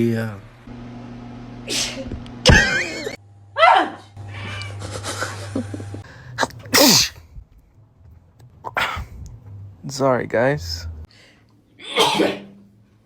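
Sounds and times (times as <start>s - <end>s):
person sneezing: 1.7s - 2.1s, 6.6s - 7.2s, 8.7s - 9.1s, 11.8s - 12.6s.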